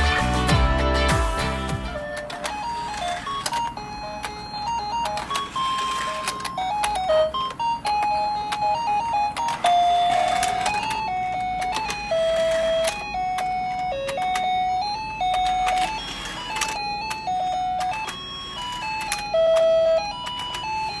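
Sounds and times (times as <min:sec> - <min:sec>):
toy electronic jingle: 0:01.8 - 0:21.0
sharp clicks: 0:02.0 - 0:14.6.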